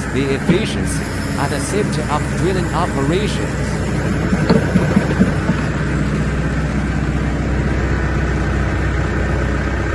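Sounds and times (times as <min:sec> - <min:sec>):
drilling rig engine droning: 0:00.0 - 0:09.9
short knocks: 0:04.2 - 0:05.9.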